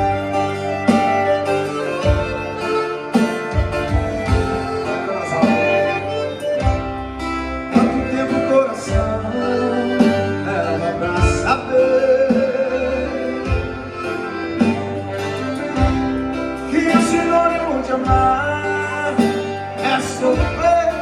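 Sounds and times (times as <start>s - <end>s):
low thumping beat: 0.0s - 8.3s
guitar-led song: 0.0s - 21.0s.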